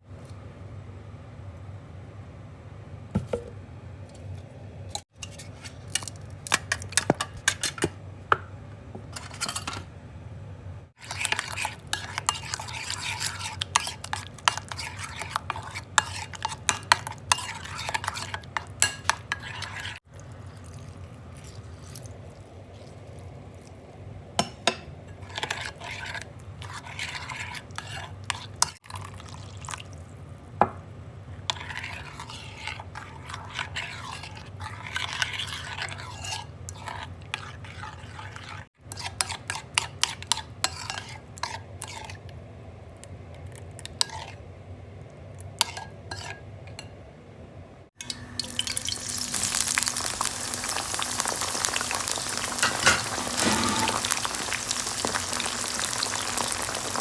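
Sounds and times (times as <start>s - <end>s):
utensils scraping a bowl: 5.2s - 7.8s, 9.1s - 9.8s, 11.0s - 20.0s, 25.1s - 28.8s, 31.5s - 42.2s, 43.9s - 44.4s, 49.4s - 57.0s
food sizzling in hot oil: 48.0s - 57.0s.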